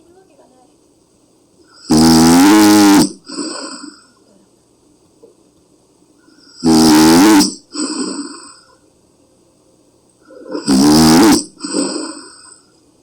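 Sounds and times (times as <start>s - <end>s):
woman snoring loudly: 1.8s - 3.9s, 6.6s - 8.6s, 10.3s - 12.6s
soft breath: 7.8s - 8.9s, 11.6s - 12.8s.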